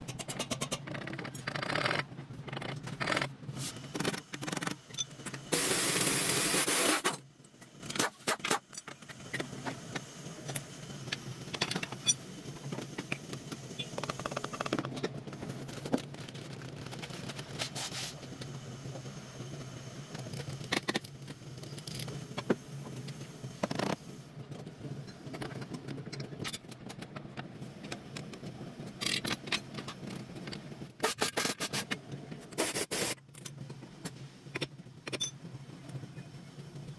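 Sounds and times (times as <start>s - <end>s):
metal tools clicking and scraping: 35.0s - 35.4s.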